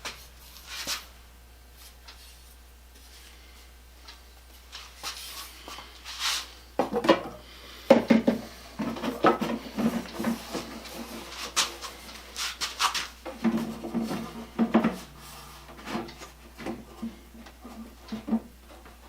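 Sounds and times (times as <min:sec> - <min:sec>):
knocks and scrapes of wood and metal: 0:04.7 - 0:19.0.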